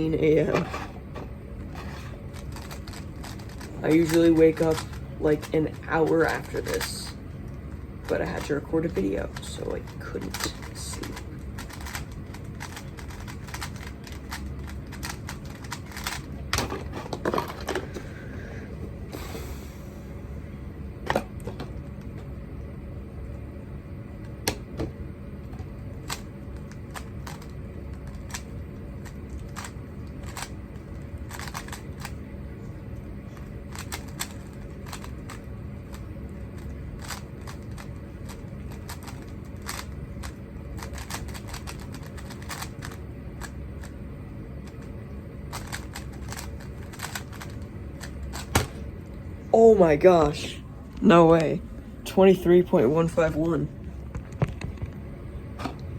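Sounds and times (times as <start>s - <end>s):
steady low hum: 0.0s - 55.9s
puzzle cube plastic clicks: 2.4s - 7.1s, 9.3s - 16.3s, 26.0s - 30.6s, 31.3s - 32.2s, 38.7s - 43.9s.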